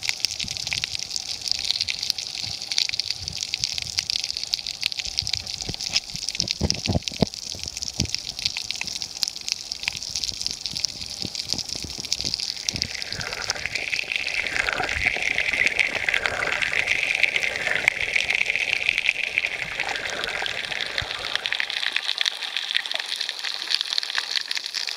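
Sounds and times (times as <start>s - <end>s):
water wash: 0.0s - 24.9s
water rushing and splashing: 10.2s - 24.8s.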